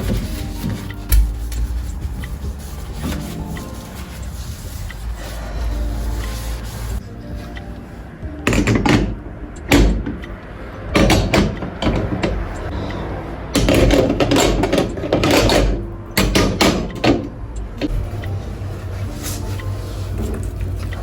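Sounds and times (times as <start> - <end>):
hard objects knocking and clattering: 8.5 - 10.2.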